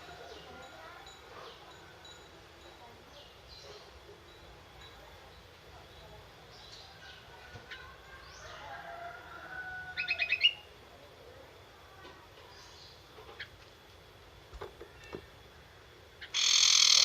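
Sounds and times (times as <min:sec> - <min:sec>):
songbird stuttering chatter: 0:16.2 - 0:17.0.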